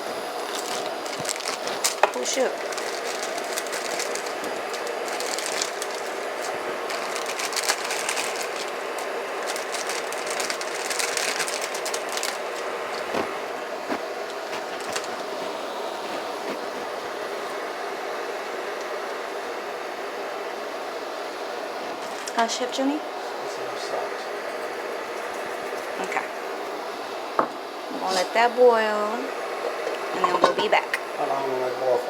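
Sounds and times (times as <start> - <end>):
water boiling in a pot: 0.0 - 23.6, 24.2 - 31.3
crackles and small knocks: 0.5 - 15.3.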